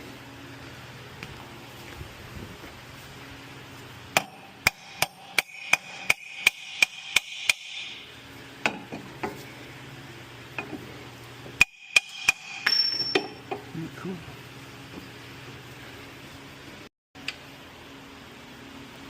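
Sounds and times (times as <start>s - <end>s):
hammer striking metal: 4.2s - 9.0s, 11.6s - 13.6s.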